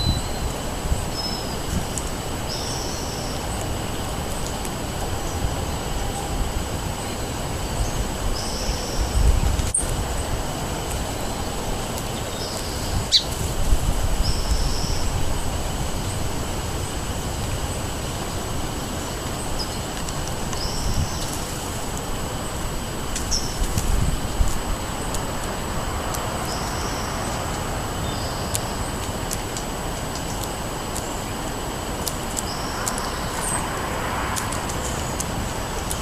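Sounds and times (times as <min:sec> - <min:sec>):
songbird high-pitched calls: 0:00.0 - 0:03.6, 0:04.4 - 0:13.4, 0:14.1 - 0:15.2, 0:19.0 - 0:21.4, 0:23.2 - 0:23.7, 0:26.1 - 0:28.9, 0:32.4 - 0:33.7
wind buffeting microphone: 0:00.0 - 0:30.1.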